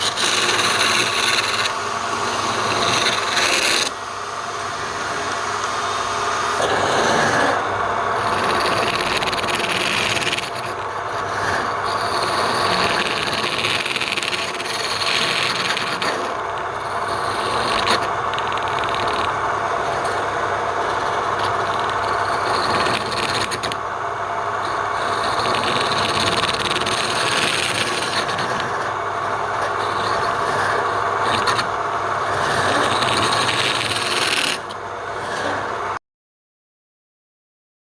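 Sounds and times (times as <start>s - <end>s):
tool rasping against wood: 0.0s - 16.4s, 20.9s - 23.8s, 24.7s - 28.9s, 29.6s - 35.7s
wood lathe motor hum: 0.0s - 36.0s.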